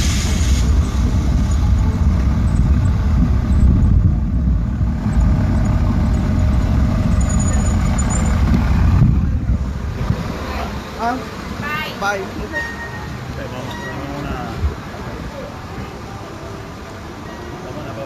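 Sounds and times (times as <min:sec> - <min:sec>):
motor vehicle close by: 0:00.0 - 0:11.6
low rumble of street traffic: 0:00.0 - 0:18.0.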